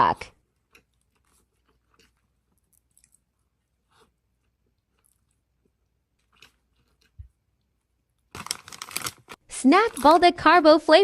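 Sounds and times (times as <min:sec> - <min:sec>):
person chewing food: 0:00.3 - 0:08.3
soft bites and smacks: 0:00.5 - 0:07.7.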